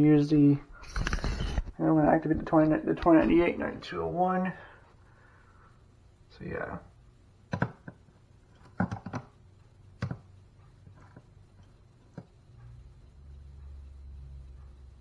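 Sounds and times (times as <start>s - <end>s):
low steady hum: 0.0s - 15.0s
sharp knocks and clicks: 7.5s - 8.0s, 8.6s - 9.4s.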